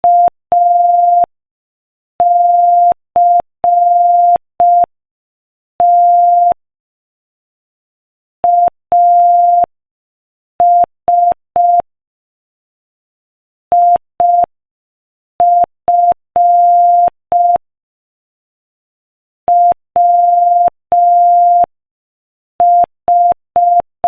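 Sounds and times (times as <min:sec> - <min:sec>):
morse code beeps: 0:00.0 - 0:01.3, 0:02.2 - 0:04.9, 0:05.8 - 0:06.6, 0:08.5 - 0:09.7.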